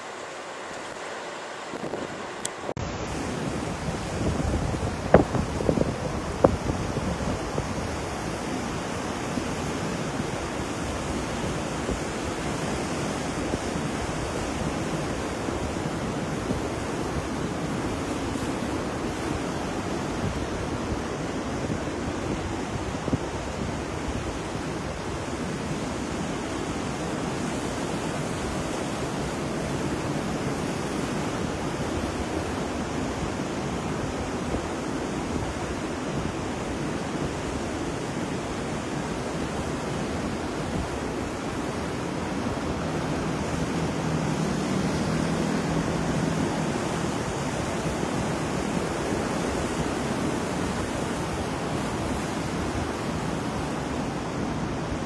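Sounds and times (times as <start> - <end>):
ocean waves: 0.0 - 55.0
pouring rain: 38.8 - 52.9.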